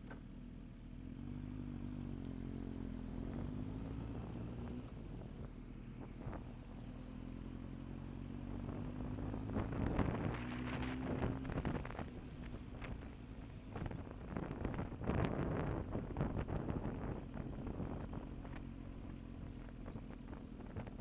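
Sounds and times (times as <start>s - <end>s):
vehicle engine running: 0.0s - 21.0s
wind buffeting microphone: 8.6s - 19.2s.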